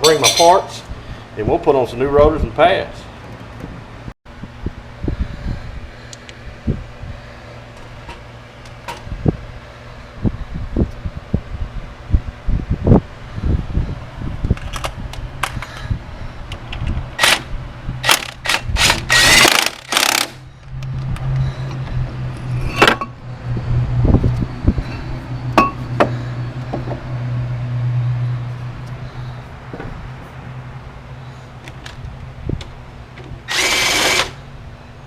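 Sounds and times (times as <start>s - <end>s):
metal tools clanking: 0.0s - 0.8s
steady low hum: 0.0s - 35.0s
impact wrench burst: 17.2s - 20.4s, 33.5s - 34.4s.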